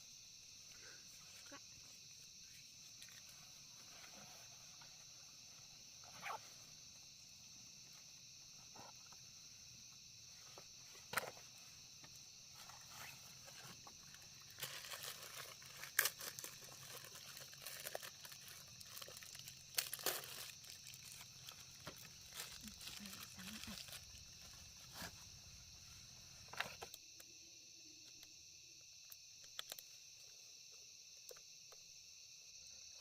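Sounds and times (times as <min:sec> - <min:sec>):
insects droning: 0:00.0 - 0:33.0
crackling rustles: 0:12.5 - 0:27.0.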